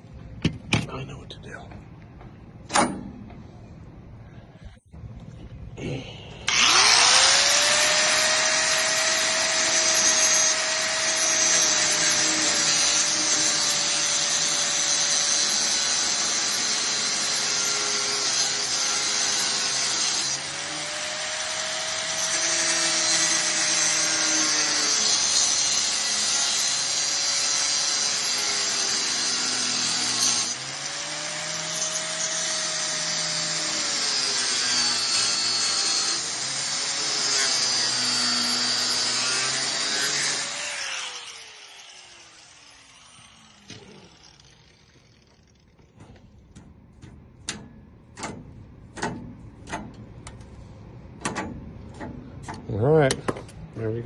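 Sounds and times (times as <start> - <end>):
angle grinder cutting metal: 6.4 - 46.2.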